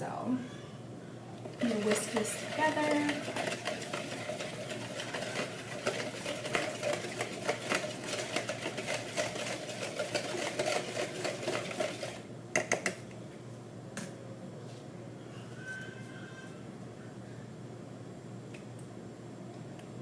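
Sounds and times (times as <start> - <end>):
whisk clicking against bowl: 1.5 - 13.0.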